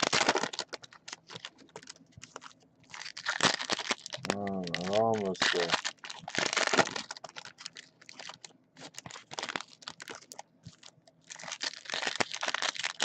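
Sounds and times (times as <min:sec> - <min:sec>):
card pack wrappers tearing and crinkling: 0:00.0 - 0:13.0.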